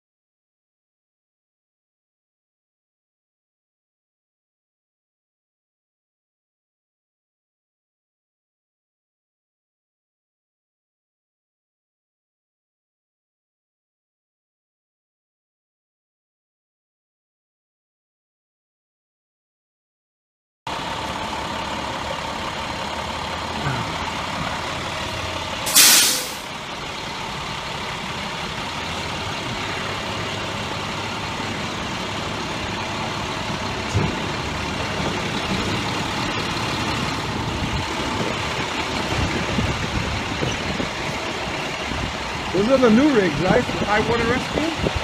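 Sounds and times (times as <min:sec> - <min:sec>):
truck engine idling: 0:20.7 - 0:45.0
air brakes hissing: 0:25.7 - 0:26.5.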